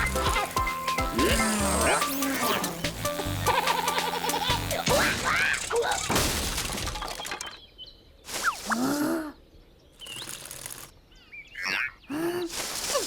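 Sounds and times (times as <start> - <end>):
squeaky character vocalization: 0.0 - 6.2, 11.6 - 12.4
cartoon rustling whoosh: 8.3 - 9.0, 12.5 - 13.0.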